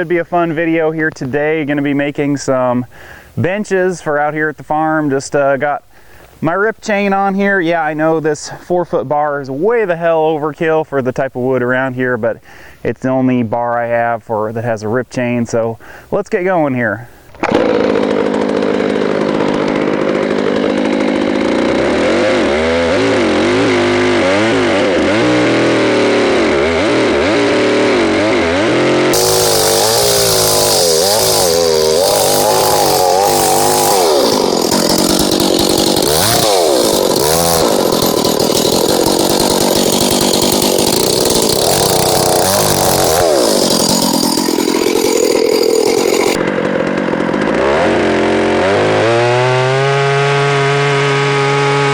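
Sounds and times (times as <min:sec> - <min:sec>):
chainsaw cutting a log: 0:17.3 - 0:51.9.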